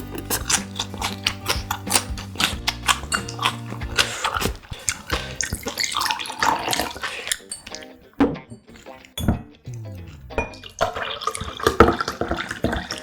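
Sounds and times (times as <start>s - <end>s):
wet chewing clicks and smacks: 0.0s - 8.0s, 8.6s - 9.9s.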